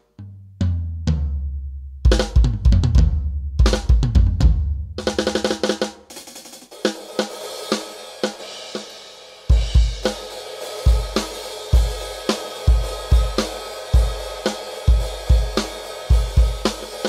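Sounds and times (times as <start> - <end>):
bass drum: 0.2 - 5.9, 9.5 - 10.2, 10.9 - 17.0
cymbal and hi-hat pattern: 5.0 - 17.0
electronic drum fill: 9.5 - 17.0.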